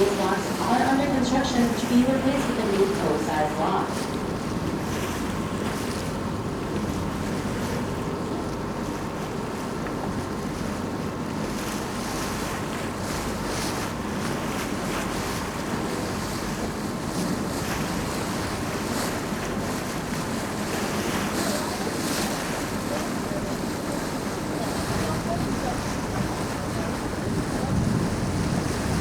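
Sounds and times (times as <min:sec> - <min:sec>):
boat engine running: 0:00.0 - 0:29.0
water rushing along hull: 0:00.0 - 0:29.0
wind buffeting microphone: 0:23.4 - 0:29.0.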